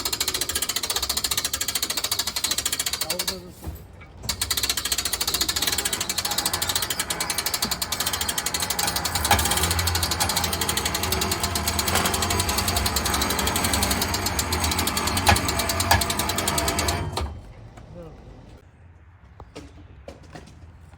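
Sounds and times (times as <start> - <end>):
power tool rattling: 0.0 - 3.5, 4.3 - 17.5.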